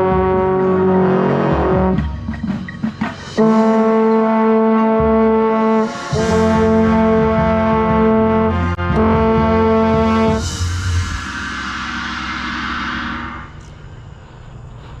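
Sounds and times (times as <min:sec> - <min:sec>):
marching band brass holding notes: 0:00.0 - 0:10.8.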